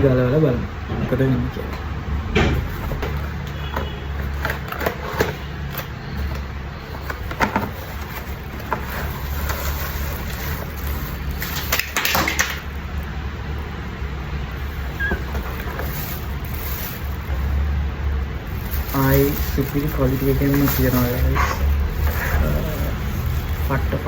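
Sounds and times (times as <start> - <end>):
packaging crinkles and knocks: 7.0 - 12.8, 15.2 - 17.6, 18.4 - 24.0.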